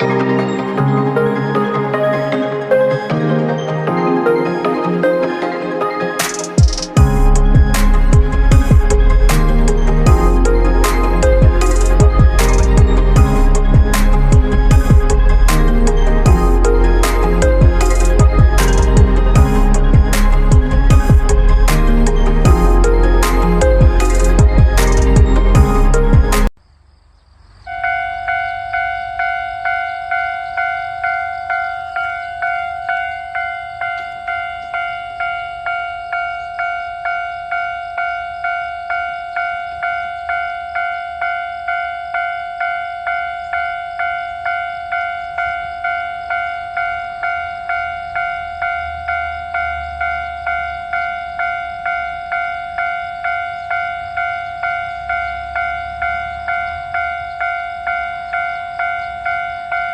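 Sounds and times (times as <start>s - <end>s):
railroad crossing bell ringing: 27.7s - 59.9s.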